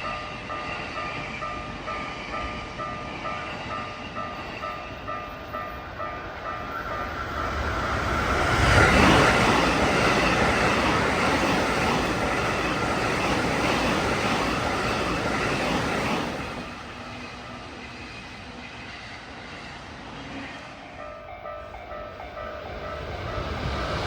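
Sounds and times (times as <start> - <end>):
electric train passing at speed: 0.0 - 24.0.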